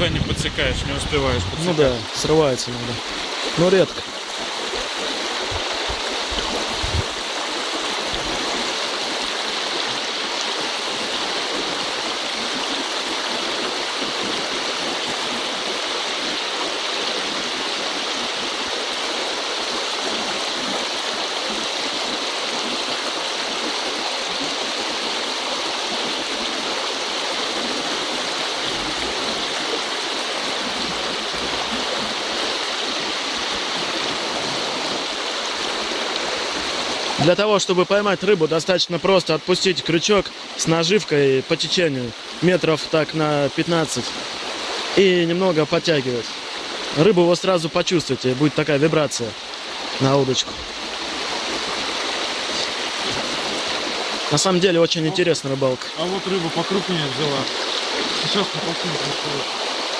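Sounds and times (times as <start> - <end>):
low thumps: 0.0 - 1.8, 4.8 - 7.2
river flowing over stones: 0.0 - 59.9.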